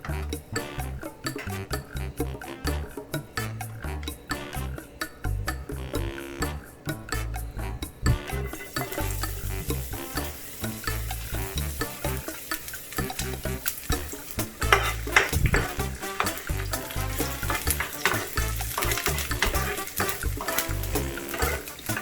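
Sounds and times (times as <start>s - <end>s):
light background music: 0.0s - 22.0s
food sizzling in frying pan: 8.3s - 22.0s
spatula scraping and knocking: 14.4s - 22.0s.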